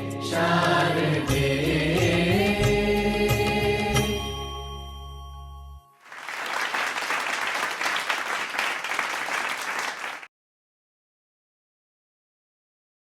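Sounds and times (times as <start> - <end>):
applause: 6.0 - 10.3.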